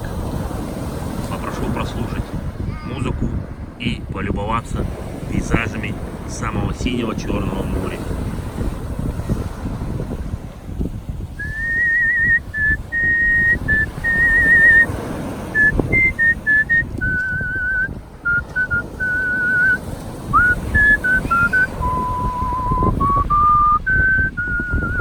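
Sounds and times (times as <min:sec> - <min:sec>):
man whistling a melody: 0:11.4 - 0:15.0, 0:15.6 - 0:25.0.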